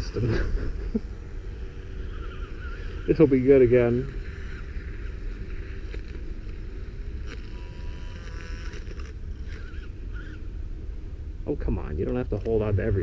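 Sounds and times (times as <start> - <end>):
electric motors running: 1.1 - 10.5.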